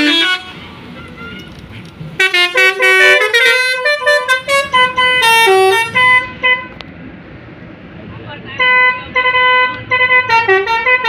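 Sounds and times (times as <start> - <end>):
multi-tone bus horn tune: 0.0 - 1.6, 2.2 - 6.8, 8.6 - 11.0.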